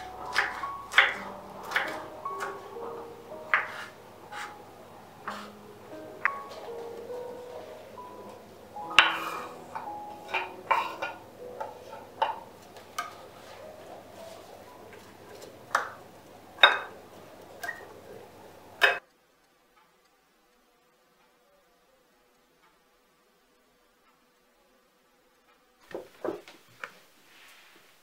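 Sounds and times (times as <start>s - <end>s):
faint background music: 0.0s - 19.0s.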